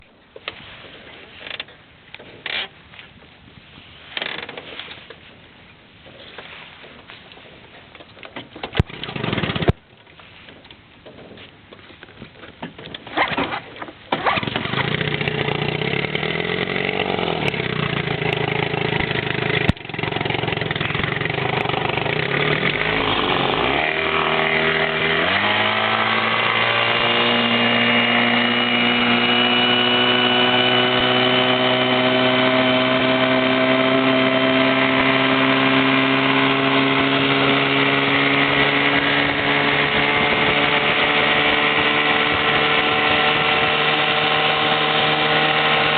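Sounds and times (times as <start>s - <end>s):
engine cranking: 8.7s - 9.8s, 13.0s - 45.9s
small gasoline engine running: 8.9s - 9.7s, 14.2s - 45.9s.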